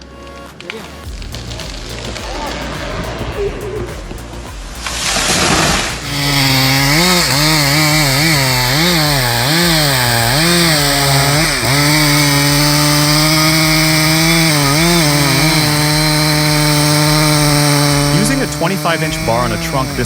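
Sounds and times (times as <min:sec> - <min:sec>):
chainsaw cutting tree trunk: 0:04.2 - 0:20.0.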